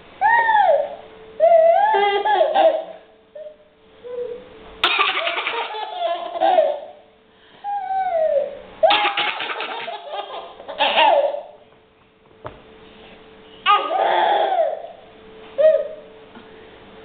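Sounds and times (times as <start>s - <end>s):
baby laughing: 1.6s - 3.5s, 4.8s - 7.0s, 7.9s - 11.6s, 13.7s - 14.9s
baby squealing: 7.8s - 11.5s, 13.7s - 14.9s.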